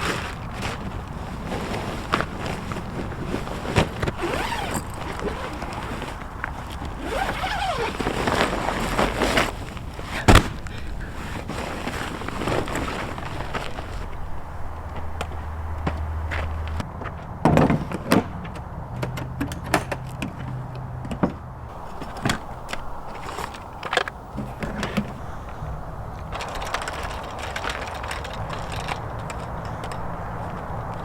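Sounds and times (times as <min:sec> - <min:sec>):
knocks clunks and clicks: 0:21.1 - 0:31.0.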